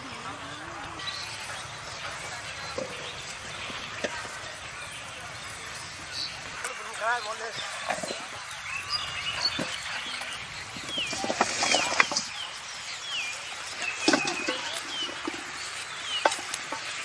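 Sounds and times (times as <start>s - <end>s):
bird whistling downward notes: 8.5s - 16.5s.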